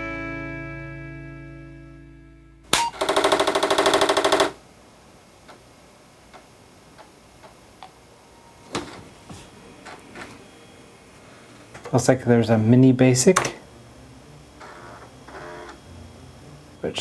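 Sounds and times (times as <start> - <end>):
floppy drive clicks: 5.4 - 10.8, 13.0 - 13.8, 14.5 - 16.7.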